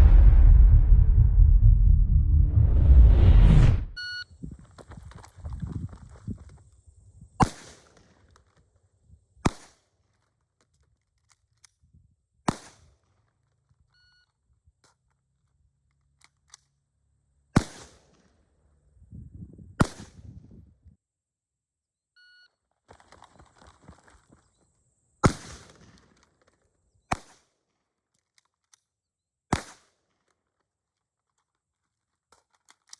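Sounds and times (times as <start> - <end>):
faint short beeps: 22.2 - 22.6.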